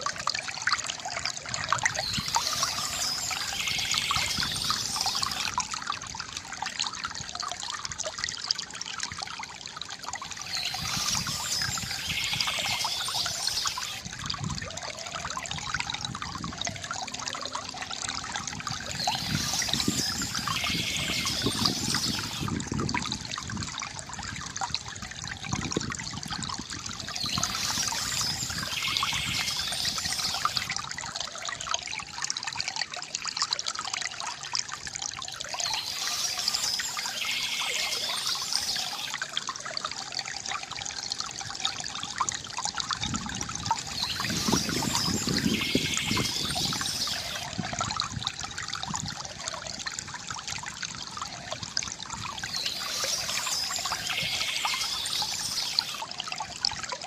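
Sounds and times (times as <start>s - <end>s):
water trickling from fountain: 0.0s - 57.0s
birds chirping: 2.0s - 5.5s, 10.4s - 14.0s, 18.9s - 22.5s, 27.1s - 30.7s, 35.6s - 39.1s, 43.9s - 47.4s, 52.4s - 56.0s.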